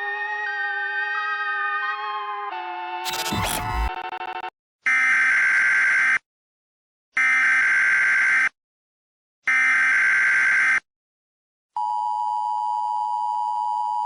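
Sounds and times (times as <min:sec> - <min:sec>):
harsh buzzing data bursts: 0:03.1 - 0:04.4.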